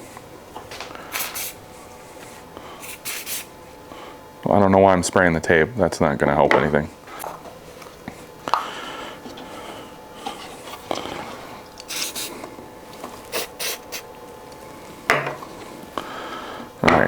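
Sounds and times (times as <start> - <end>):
pump spray bottle hissing: 1.1 - 1.6, 2.8 - 3.5, 11.8 - 12.4, 13.3 - 14.1.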